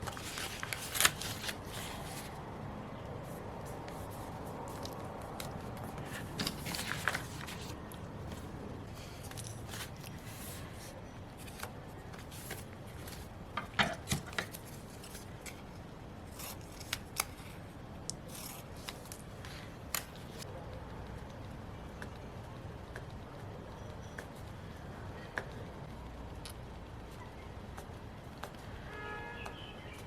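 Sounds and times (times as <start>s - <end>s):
scissors snipping paper: 18.1s - 20.2s.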